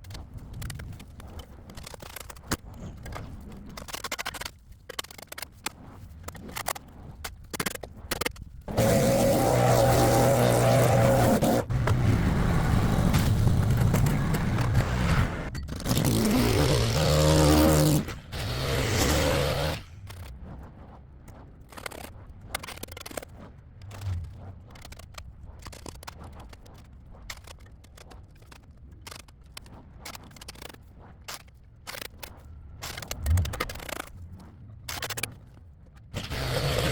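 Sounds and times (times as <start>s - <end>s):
irregular scraping strokes: 8.6s - 35.6s.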